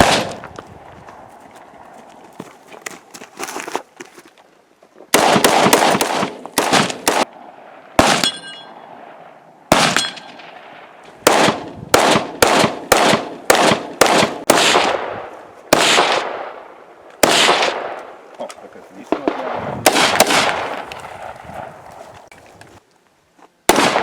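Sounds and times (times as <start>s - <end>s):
rifle shots: 0.0s - 0.4s, 5.1s - 18.2s, 19.1s - 21.7s, 23.7s - 24.0s
metallic ring: 8.2s - 8.8s.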